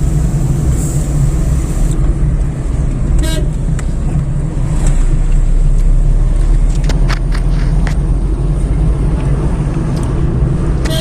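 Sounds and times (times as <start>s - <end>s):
car engine and road noise: 0.0s - 11.0s
car horn toot: 3.2s - 3.6s, 10.8s - 11.0s.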